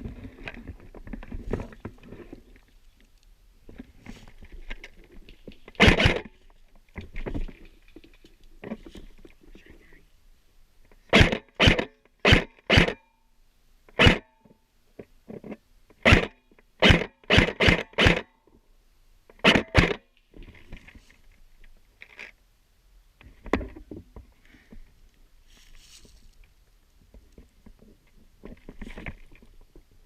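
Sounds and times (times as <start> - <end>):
rustling: 0.0 - 9.8, 20.2 - 22.4, 23.3 - 30.0.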